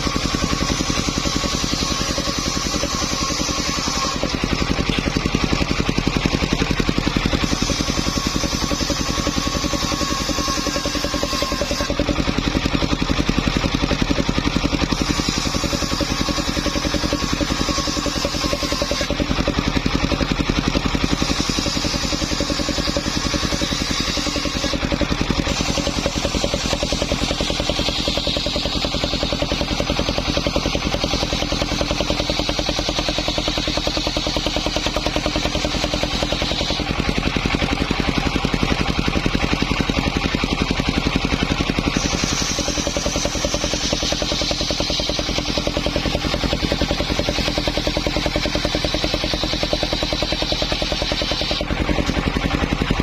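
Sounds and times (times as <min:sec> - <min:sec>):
saw blade hissing through wood: 0:00.0 - 0:04.6, 0:06.6 - 0:12.2, 0:14.9 - 0:19.2, 0:21.0 - 0:37.5, 0:41.6 - 0:52.0
small engine running: 0:00.0 - 0:53.0.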